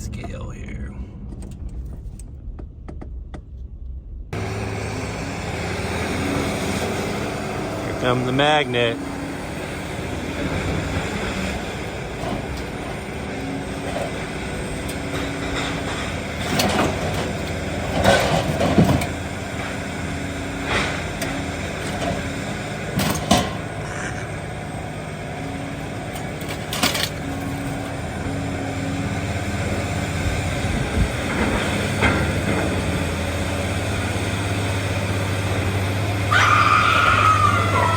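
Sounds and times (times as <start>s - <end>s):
heavy engine running: 0.0s - 37.9s
scrap metal clanking: 5.6s - 34.1s.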